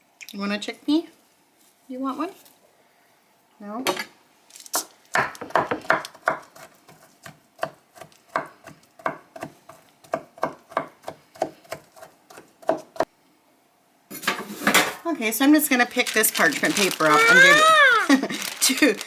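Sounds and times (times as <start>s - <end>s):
knife chopping on paper: 5.2s - 13.1s.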